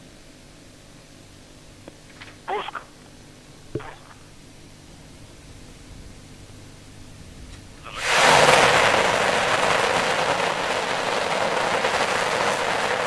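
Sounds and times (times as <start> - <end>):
rocket engines roaring: 7.8 - 13.0.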